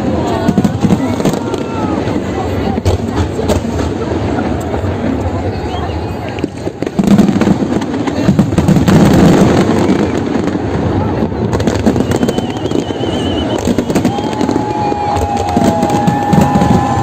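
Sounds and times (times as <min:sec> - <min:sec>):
fireworks bursting and crackling: 0:00.0 - 0:17.0
warbling high whistle: 0:12.0 - 0:14.7.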